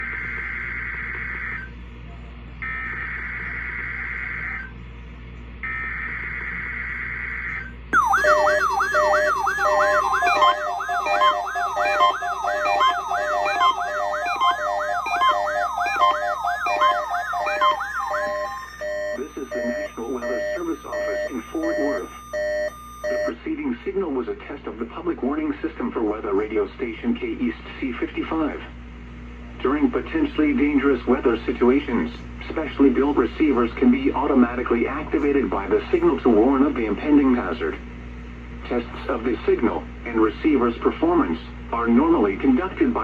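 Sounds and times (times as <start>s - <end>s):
electronic alarm chirping: 0.0s - 1.7s, 2.6s - 4.8s, 5.6s - 23.4s
steady electronic beeps: 5.6s - 23.4s
two-tone data warble bursts: 7.4s - 23.3s.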